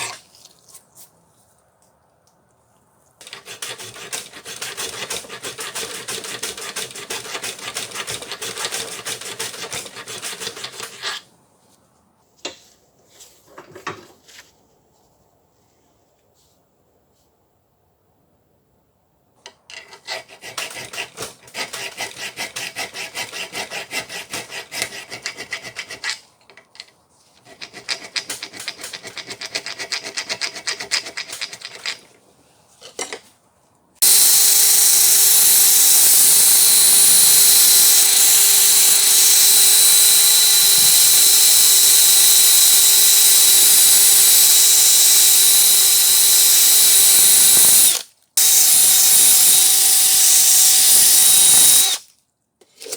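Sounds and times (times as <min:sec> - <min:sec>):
hand tool rasping strokes: 0:03.2 - 0:11.2, 0:19.9 - 0:26.2, 0:27.4 - 0:32.0, 0:34.0 - 0:52.0
electric power tool running: 0:34.0 - 0:52.0.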